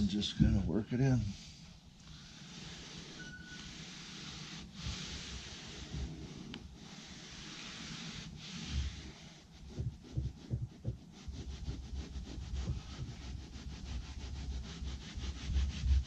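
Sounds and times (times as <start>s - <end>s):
hands rubbing carpet: 2.1s - 16.0s
low thumps: 9.7s - 11.0s.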